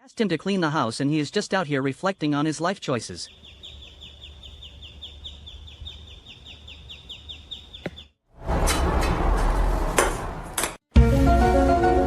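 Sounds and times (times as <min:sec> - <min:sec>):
rapid high chirps: 0:03.3 - 0:07.8
music: 0:10.9 - 0:12.0.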